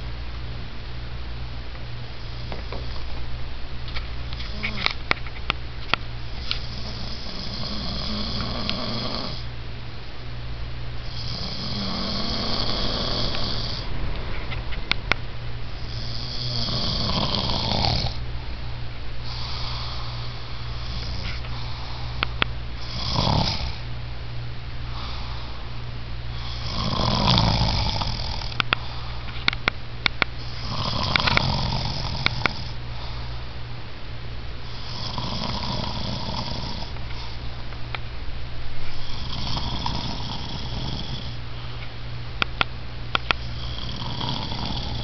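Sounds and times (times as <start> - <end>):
man snoring: 4.4 - 4.9, 6.4 - 9.5, 11.0 - 13.9, 15.7 - 18.2, 19.2 - 22.2, 22.8 - 23.8, 26.3 - 29.1, 30.4 - 32.8, 34.6 - 37.4, 39.0 - 41.4, 43.4 - 45.0.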